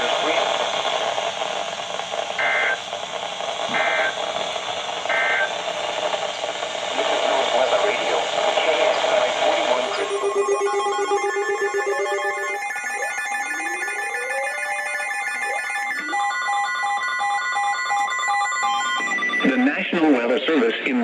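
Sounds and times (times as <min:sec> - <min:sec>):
steady alarm tones: 0:00.0 - 0:06.2, 0:08.7 - 0:20.2
electronic on-off beeps: 0:02.4 - 0:02.8, 0:03.7 - 0:04.2, 0:05.1 - 0:05.6, 0:09.7 - 0:19.6.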